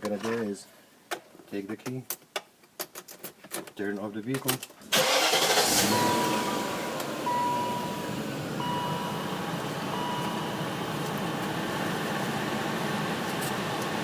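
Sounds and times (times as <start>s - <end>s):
car rushing hum: 4.9s - 14.0s
car warning chime beeping: 5.0s - 11.0s.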